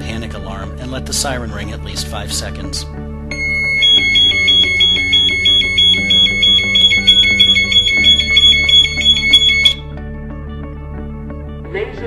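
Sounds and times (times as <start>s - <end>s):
shrill two-tone alarm siren: 3.3s - 9.8s.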